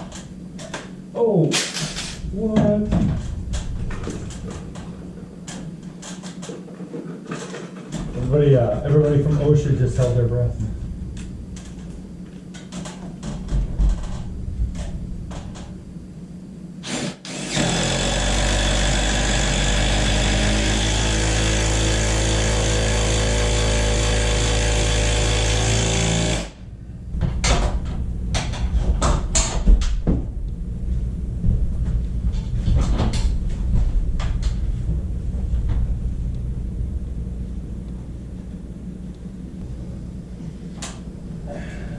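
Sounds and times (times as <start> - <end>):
power tool running: 16.8 - 26.6.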